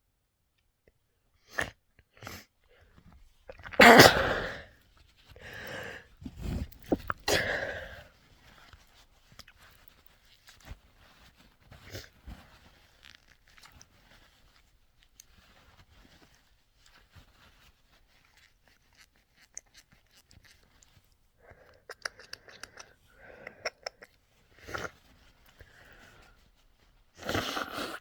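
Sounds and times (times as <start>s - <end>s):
person sniffling: 3.8s - 4.7s, 7.2s - 8.1s.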